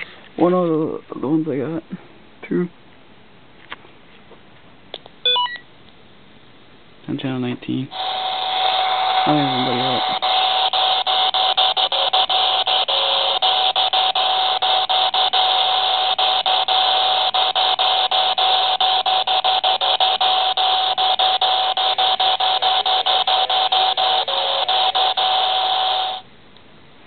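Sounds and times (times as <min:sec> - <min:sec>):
radio static hiss: 0:07.8 - 0:26.2.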